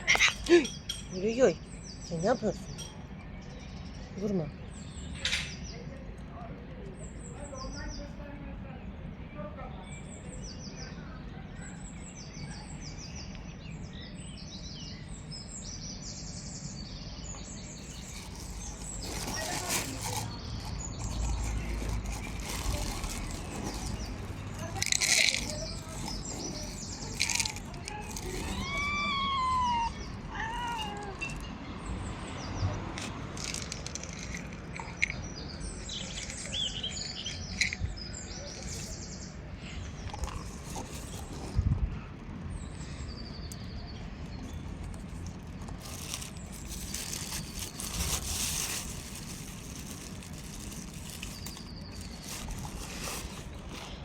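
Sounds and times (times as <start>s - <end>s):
cat meowing: 28.2s - 31.4s.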